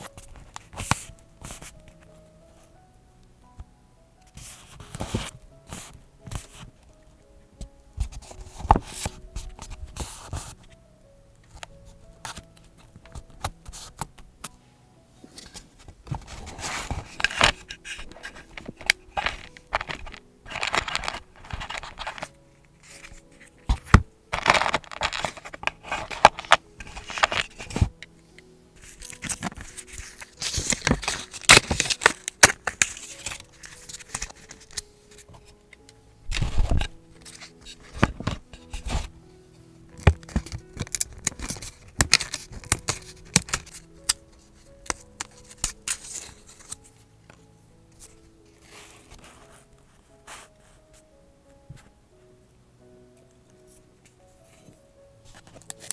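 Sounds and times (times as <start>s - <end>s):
paper rustling and scraping: 0.0s - 2.1s, 4.3s - 6.8s, 8.0s - 10.8s, 15.2s - 35.6s, 36.3s - 39.2s, 39.8s - 47.0s, 47.9s - 50.8s, 53.7s - 55.9s
soft background music: 0.0s - 55.9s.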